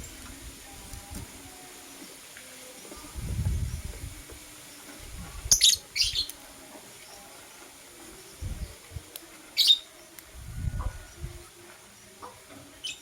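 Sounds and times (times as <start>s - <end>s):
birds shrill chirps: 4.7s - 13.0s.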